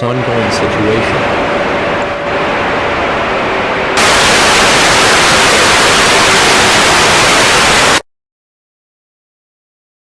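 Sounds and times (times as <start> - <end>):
loud broadcast static hiss: 0.0 - 8.0.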